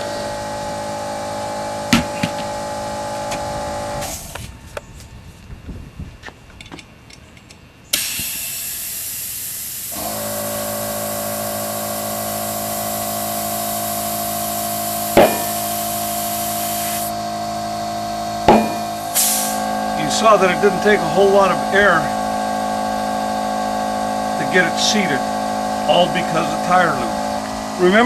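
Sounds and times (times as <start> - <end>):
electric air compressor running: 0.0 - 4.5, 7.9 - 28.0
air hissing into tire: 4.0 - 4.5, 7.9 - 17.2, 18.5 - 19.7
tire bead popping onto rim: 12.7 - 17.1, 18.4 - 19.3.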